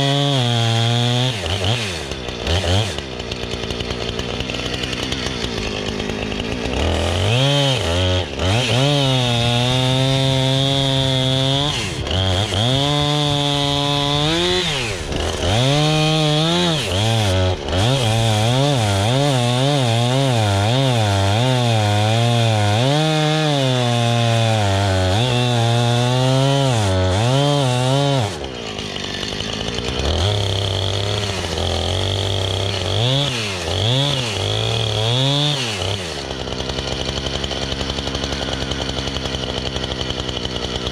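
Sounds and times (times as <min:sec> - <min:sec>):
chainsaw cutting wood: 0:00.0 - 0:40.9.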